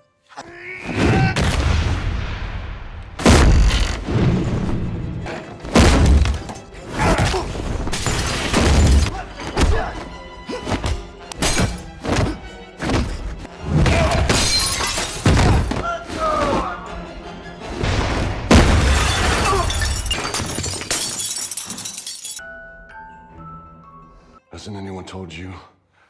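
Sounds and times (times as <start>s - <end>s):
strike impacts and heavy thuds: 0.9s - 16.7s, 17.7s - 20.7s
fight soundtrack music: 1.4s - 19.0s
things smashing: 5.6s - 10.1s, 10.7s - 16.6s, 17.8s - 22.4s.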